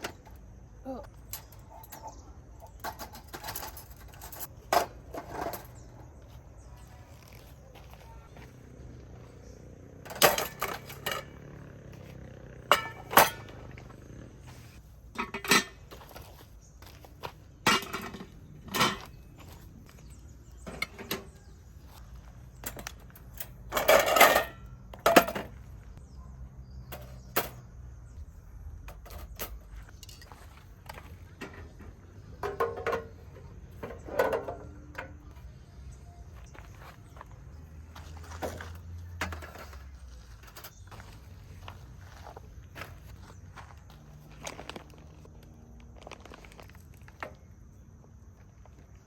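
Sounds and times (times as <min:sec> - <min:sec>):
dishes and utensils clattering: 0:01.2 - 0:06.0, 0:10.0 - 0:11.6, 0:12.6 - 0:13.8, 0:15.1 - 0:16.3, 0:17.6 - 0:19.1, 0:20.6 - 0:21.4, 0:22.6 - 0:25.6, 0:28.9 - 0:35.2.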